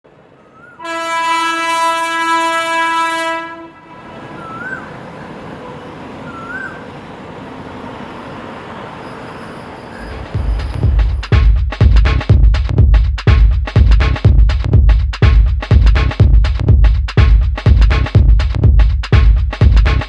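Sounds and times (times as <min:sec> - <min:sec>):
loud horn blast: 0:00.8 - 0:04.4
steady rushing rumble: 0:10.0 - 0:20.0.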